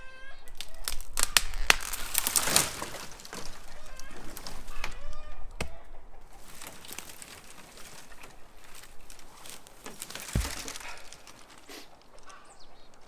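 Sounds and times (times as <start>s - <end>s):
twigs and brush rustling: 0.4s - 13.0s
dull thump: 6.4s - 11.6s.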